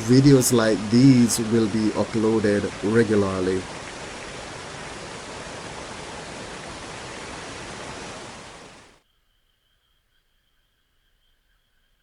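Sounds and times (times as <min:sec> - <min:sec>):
waterfall roaring: 0:00.0 - 0:08.9.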